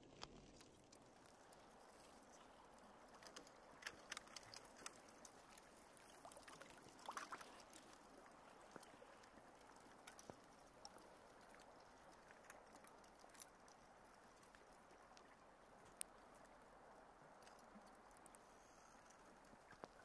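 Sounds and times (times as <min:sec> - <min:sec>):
soft ticks: 0:00.2 - 0:06.8, 0:07.4 - 0:20.0
faint hiss: 0:05.0 - 0:20.0.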